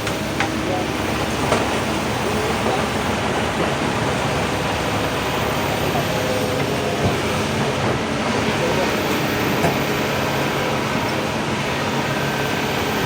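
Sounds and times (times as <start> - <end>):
excavator engine running: 0.0 - 13.0.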